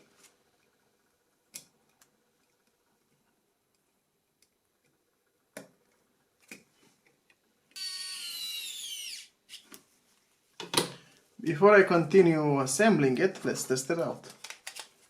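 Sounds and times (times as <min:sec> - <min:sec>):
electric screwdriver whine: 0:07.8 - 0:09.4.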